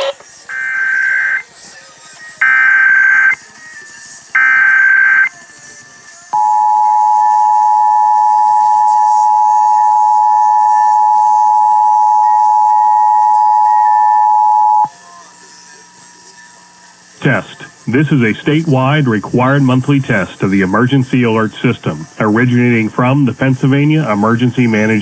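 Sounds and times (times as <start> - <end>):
buzzy data screech bursts: 0.0 - 3.4.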